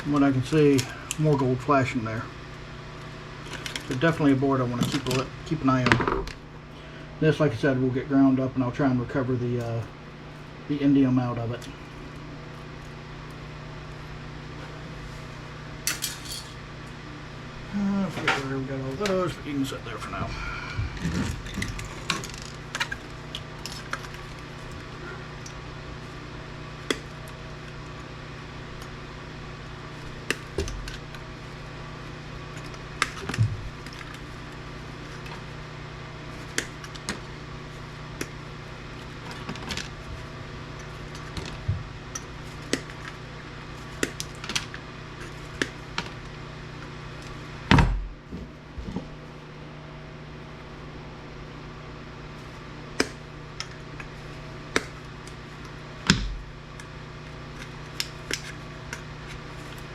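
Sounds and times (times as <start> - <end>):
steady low hum: 0.0 - 59.9
tools and parts clinking: 15.9 - 16.6.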